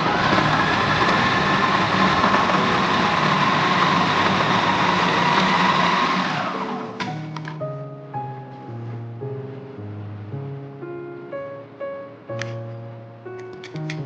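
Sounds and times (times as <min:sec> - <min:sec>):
food processor motor whirring: 0:00.0 - 0:07.0.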